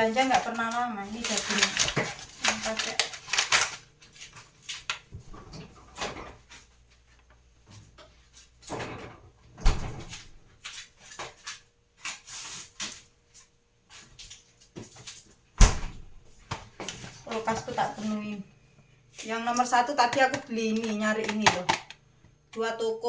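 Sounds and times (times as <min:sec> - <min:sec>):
groceries knocking and clattering: 0:00.0 - 0:06.8, 0:14.0 - 0:18.2, 0:19.4 - 0:22.3.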